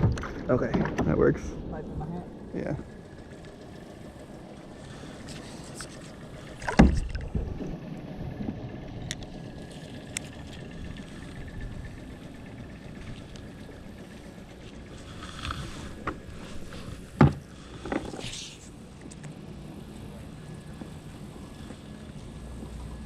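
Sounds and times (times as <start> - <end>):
water wash and paddling: 0.0 - 23.0
knock against a kayak: 6.6 - 7.1, 17.2 - 18.2
faint light ticks: 13.1 - 13.5.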